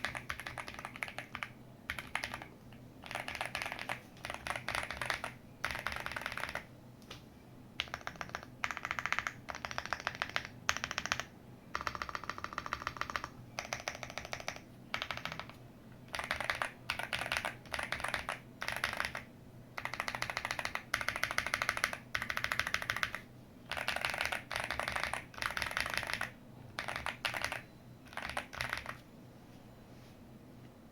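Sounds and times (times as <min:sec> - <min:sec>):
mechanical keyboard clacks: 0:00.0 - 0:06.6, 0:07.8 - 0:29.0.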